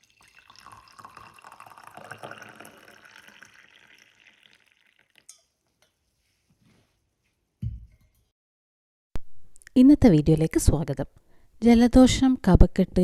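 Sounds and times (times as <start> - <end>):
crackly liquid hiss with drips: 0.0 - 6.0.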